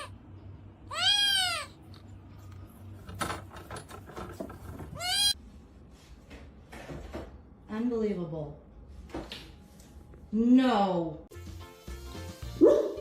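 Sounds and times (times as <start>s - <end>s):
cat meowing: 0.9s - 1.8s, 5.0s - 5.4s.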